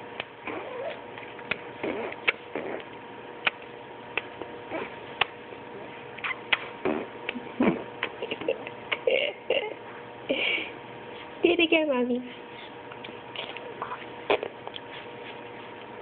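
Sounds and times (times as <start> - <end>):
short mouth sounds: 1.8 - 3.6, 4.2 - 5.4, 6.2 - 8.2, 12.6 - 15.4.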